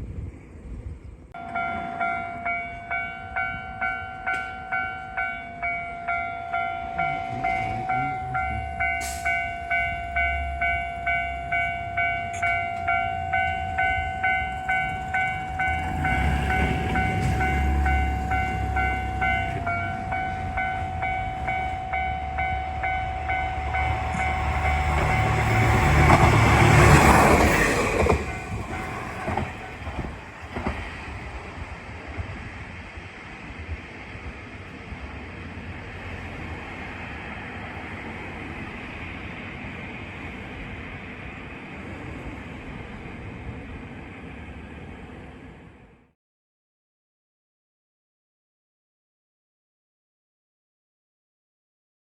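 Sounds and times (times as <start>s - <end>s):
diesel railcar rumbling: 0.0s - 46.1s
level crossing bell ringing: 1.4s - 26.3s.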